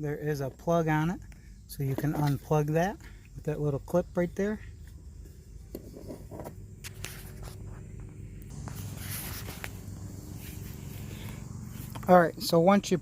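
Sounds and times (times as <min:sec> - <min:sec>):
low background hum: 0:00.0 - 0:13.0
handling noise: 0:05.2 - 0:12.2.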